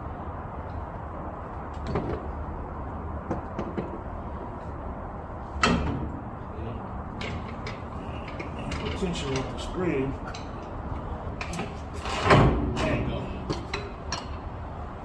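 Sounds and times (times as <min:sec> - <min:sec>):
steady low hum: 0:00.0 - 0:15.0
metal suspension knocks and clicks: 0:05.6 - 0:06.2, 0:07.1 - 0:14.5
sharp metal clunk: 0:05.6 - 0:06.2.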